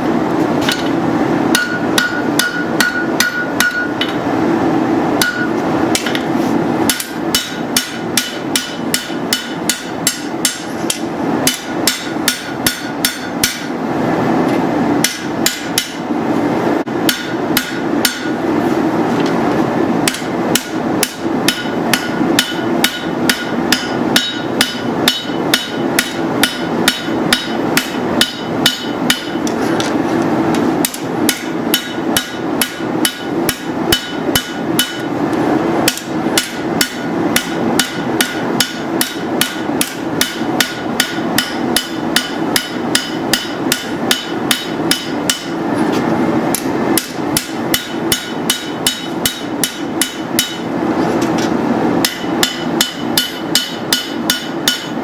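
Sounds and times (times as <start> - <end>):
steady background noise: 0.0 - 55.0
hammer striking steel on anvil: 0.6 - 4.2, 5.2 - 13.8, 15.0 - 16.1, 17.0 - 18.5, 20.0 - 35.2, 35.8 - 45.7, 46.5 - 55.0.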